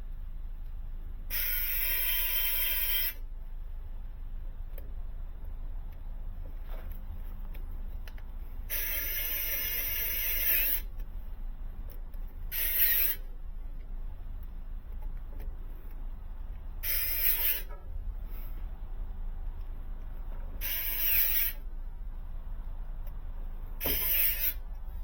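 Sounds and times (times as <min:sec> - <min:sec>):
steady low hum: 0:00.0 - 0:25.0
power drill running: 0:01.3 - 0:03.2, 0:08.7 - 0:10.9, 0:12.5 - 0:13.2, 0:16.8 - 0:17.7, 0:20.6 - 0:21.6, 0:23.8 - 0:24.6.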